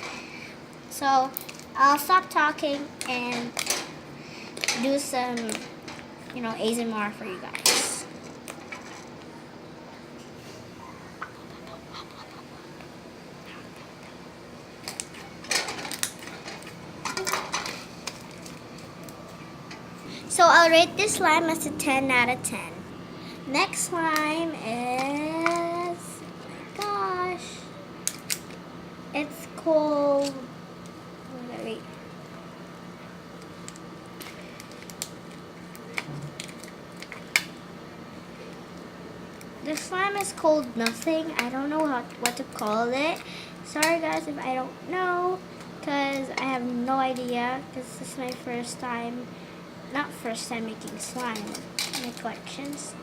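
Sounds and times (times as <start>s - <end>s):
low hum: 9.3s - 26.8s.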